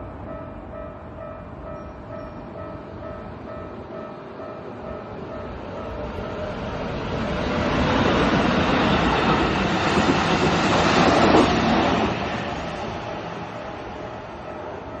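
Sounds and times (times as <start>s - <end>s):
level crossing warning bell: 0.0s - 6.6s, 13.5s - 15.0s
electric train passing: 0.0s - 15.0s.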